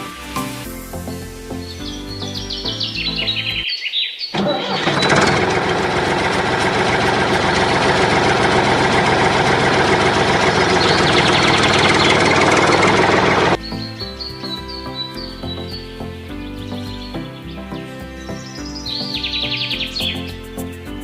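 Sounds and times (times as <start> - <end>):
bird chirps: 0.8 - 4.4, 9.8 - 21.0
small engine running: 4.4 - 13.6.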